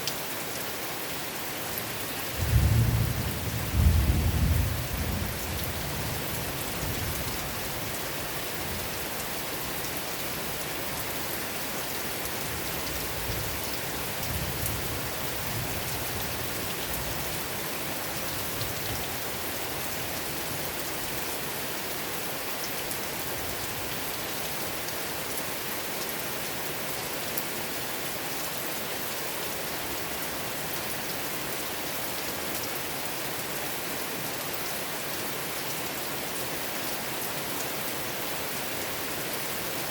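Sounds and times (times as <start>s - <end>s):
steady rain falling: 0.0s - 39.9s
low thunder rumble: 2.4s - 6.2s.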